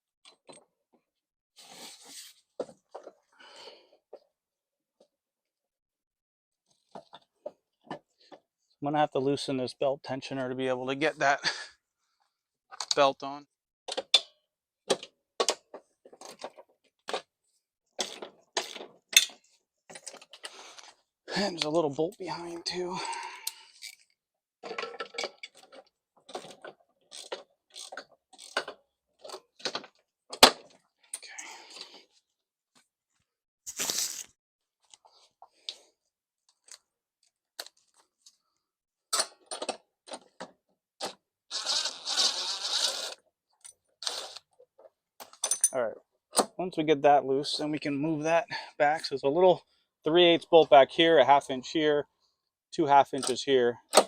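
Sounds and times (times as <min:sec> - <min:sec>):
metal tools clinking on metal: 0:45.4 - 0:45.8.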